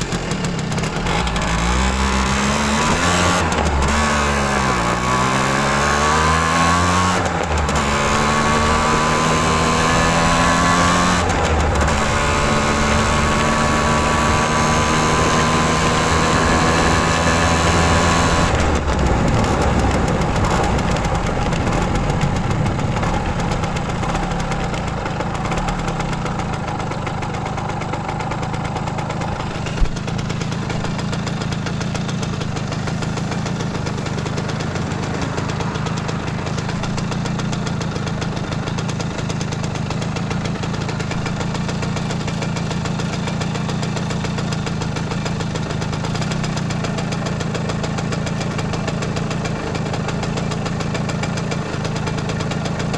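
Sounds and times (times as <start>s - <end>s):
two-stroke engine running: 0.0s - 52.9s.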